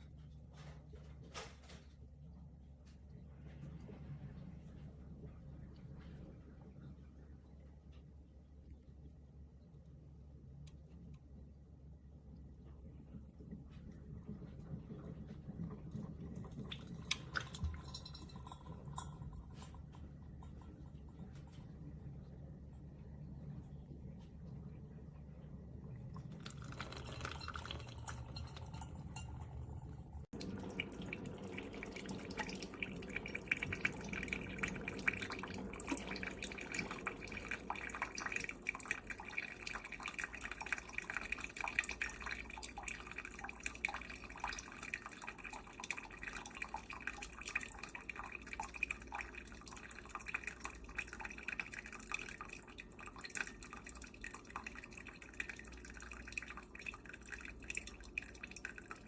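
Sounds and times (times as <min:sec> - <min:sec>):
coffee dripping and crackling: 0:04.8 - 0:24.6, 0:25.9 - 0:59.0
coffee maker brewing hiss: 0:26.1 - 0:28.9, 0:29.5 - 0:59.0.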